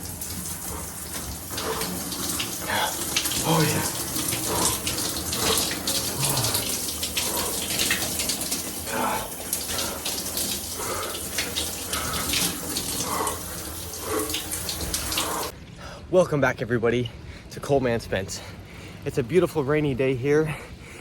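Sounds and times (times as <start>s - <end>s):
shower water splashing: 0.0s - 15.6s.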